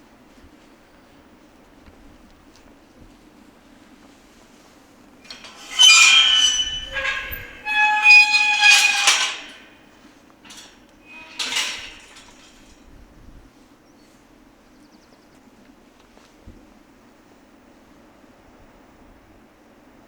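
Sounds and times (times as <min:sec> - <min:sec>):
metal clanking and ringing: 0:05.3 - 0:09.7, 0:10.5 - 0:12.8.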